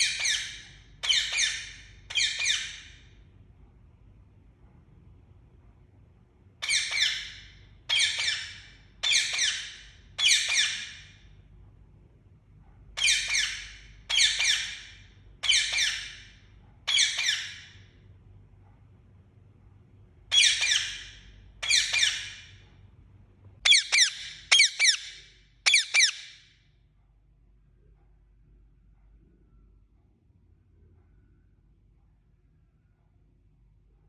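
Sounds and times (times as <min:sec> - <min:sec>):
parakeet squawking: 0:00.0 - 0:03.0, 0:06.6 - 0:11.1, 0:13.0 - 0:17.8, 0:20.3 - 0:22.5, 0:23.6 - 0:26.4.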